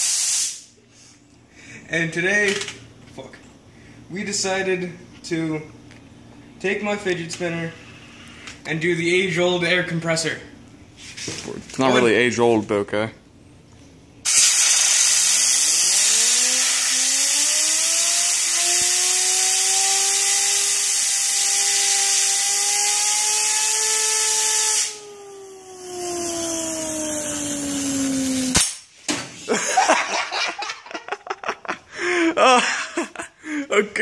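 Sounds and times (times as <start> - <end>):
compressed air hissing: 0.0 - 1.8, 14.2 - 29.0
fidget spinner whine: 15.2 - 28.8.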